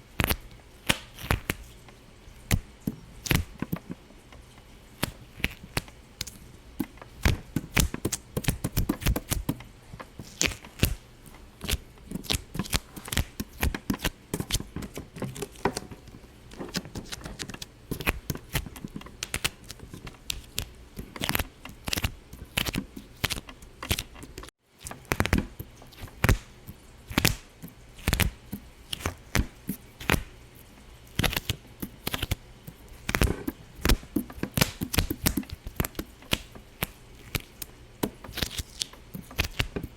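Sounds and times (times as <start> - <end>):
rapid sharp pops and clicks: 33.1 - 39.9.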